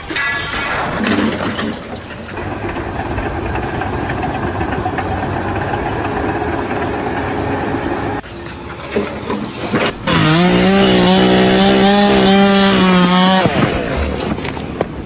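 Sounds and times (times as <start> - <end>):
large engine running: 1.0 - 11.2.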